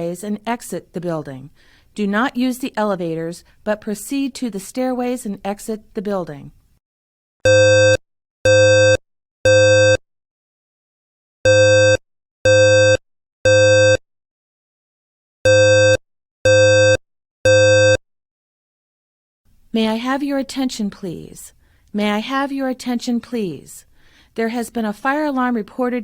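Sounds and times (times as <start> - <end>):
fire alarm buzzy beeps: 7.4 - 10.0, 11.4 - 14.0, 15.4 - 18.0.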